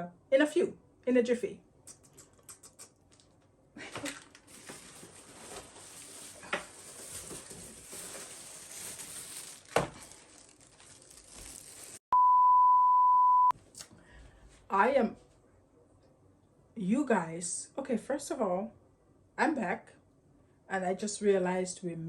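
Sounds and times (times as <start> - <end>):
plastic packaging rustling: 3.1 - 12.0
steady electronic beep: 12.2 - 13.5.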